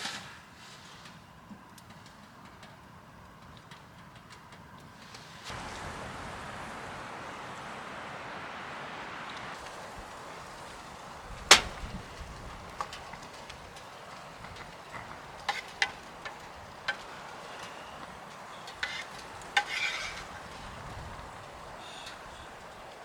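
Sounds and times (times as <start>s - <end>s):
steady hiss: 4.8s - 23.0s
sharp loud knock: 11.5s - 11.9s
light clicks and taps: 11.5s - 20.6s.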